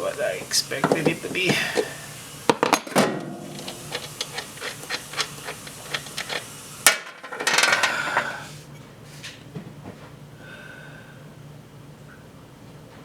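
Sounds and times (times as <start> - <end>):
metallic clattering and rattling: 2.5 - 8.0.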